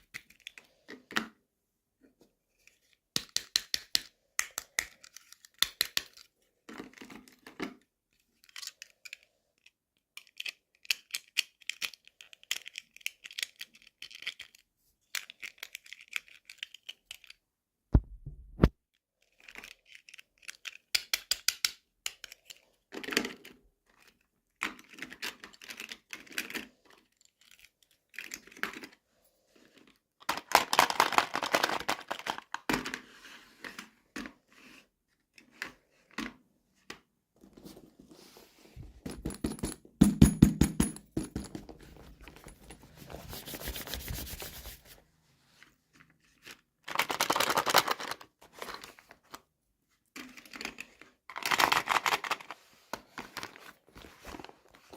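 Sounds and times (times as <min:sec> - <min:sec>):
dull thump: 0:18.0 - 0:18.7
plastic and paper crinkling: 0:41.8 - 0:45.0, 0:51.3 - 0:54.9.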